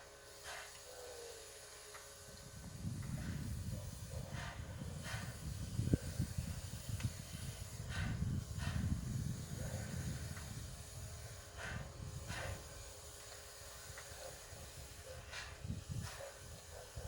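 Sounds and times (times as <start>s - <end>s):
steam locomotive hissing: 0.0s - 17.0s
steam puffs: 0.0s - 17.0s
steady low rumble: 2.4s - 12.9s.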